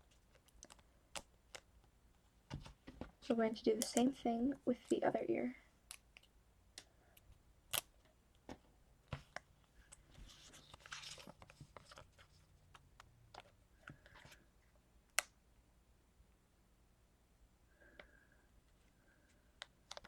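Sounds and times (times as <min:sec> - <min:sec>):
light clicks and taps: 0:02.5 - 0:04.2
paper and sticker rustling: 0:10.0 - 0:12.5.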